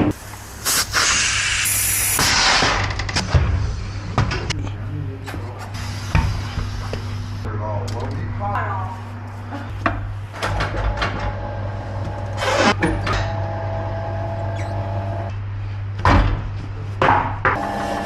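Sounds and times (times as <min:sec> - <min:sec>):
short hissing bursts: 0:00.1 - 0:02.6
low machine hum: 0:03.8 - 0:18.0.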